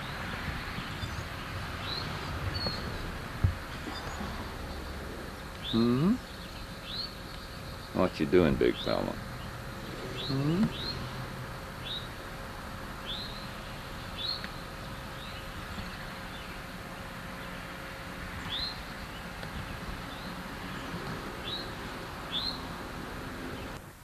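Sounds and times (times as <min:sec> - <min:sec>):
faint hum: 0:00.0 - 0:24.0
small bird chirping: 0:05.4 - 0:08.0, 0:08.7 - 0:11.1.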